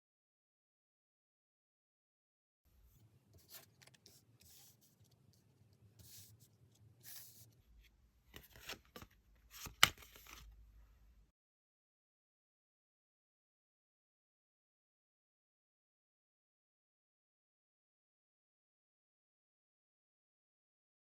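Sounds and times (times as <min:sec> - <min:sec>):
cards rustling and sliding: 0:03.4 - 0:05.1, 0:07.0 - 0:07.5, 0:08.3 - 0:10.5.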